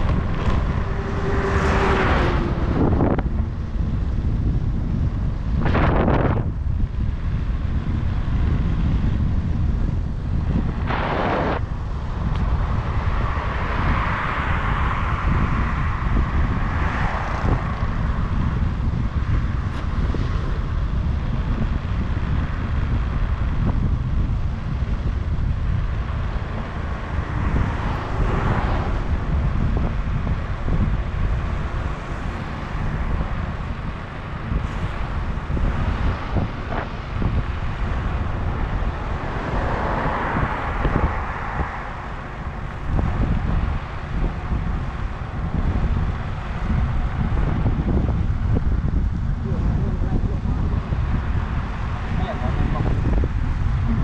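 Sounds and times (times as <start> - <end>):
wind buffeting microphone: 0.0 - 54.0.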